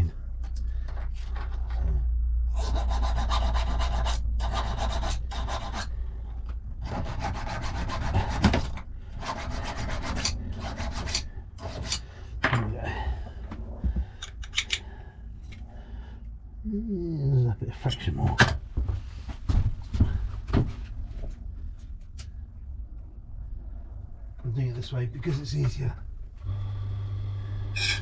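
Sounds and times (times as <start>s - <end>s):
cutter grinding metal key: 27.8s - 28.0s.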